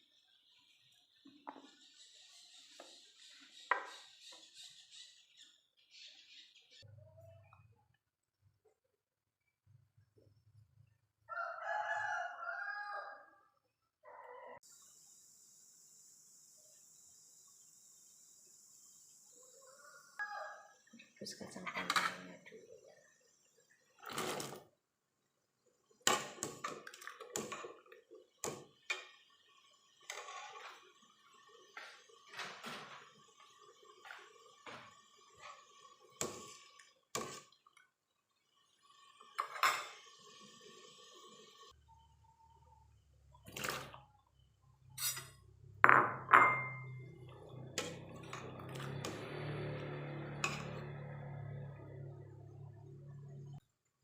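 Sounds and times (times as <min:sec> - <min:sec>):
cookware clanking: 0:45.0 - 0:47.1.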